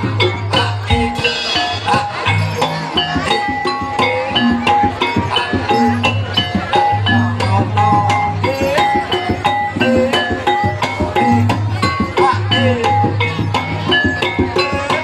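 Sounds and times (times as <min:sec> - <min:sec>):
lively dance music: 0:00.0 - 0:15.0.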